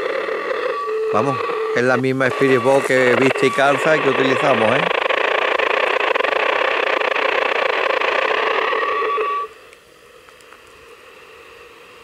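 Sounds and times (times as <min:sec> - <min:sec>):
short steady tone: 0:00.0 - 0:04.7
radio static hiss: 0:00.0 - 0:12.0.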